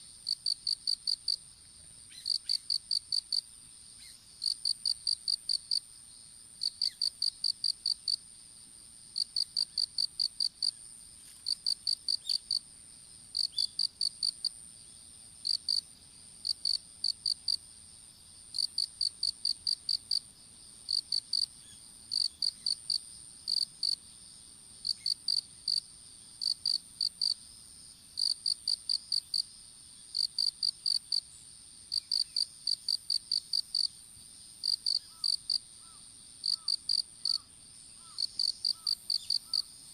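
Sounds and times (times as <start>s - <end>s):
insect chirping in pulses: 0.1s - 24.2s, 24.8s - 27.6s, 28.2s - 39.9s
insect high-pitched trill: 2.0s - 5.8s, 6.6s - 8.2s, 9.2s - 12.6s, 13.3s - 14.6s, 15.4s - 17.8s, 18.5s - 20.3s, 20.9s - 24.0s, 24.8s - 27.4s, 28.2s - 39.9s.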